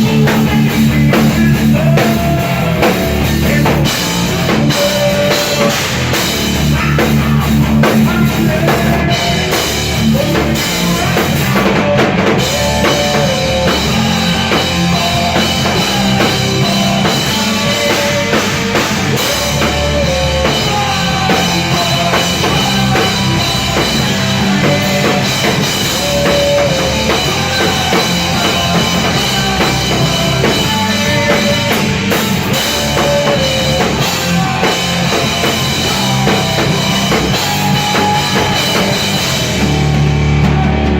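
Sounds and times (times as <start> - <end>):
guitar: 0.0 - 40.9
rock band playing live: 0.0 - 40.9.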